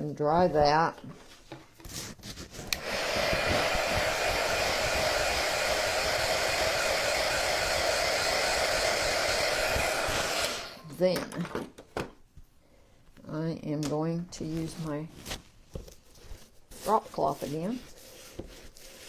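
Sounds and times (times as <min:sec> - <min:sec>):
hot-air dryer blowing: 0:02.7 - 0:10.9.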